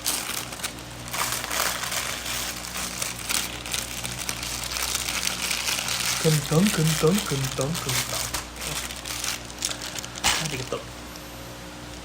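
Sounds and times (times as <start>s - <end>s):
food crinkling and crackling: 0.0s - 10.8s
steady low hum: 0.0s - 12.0s.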